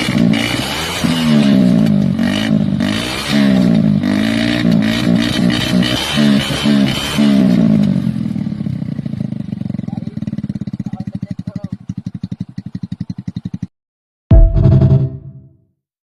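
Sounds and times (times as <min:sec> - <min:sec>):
motorcycle engine idling: 0:07.8 - 0:13.7
loud burst of music: 0:14.3 - 0:15.4.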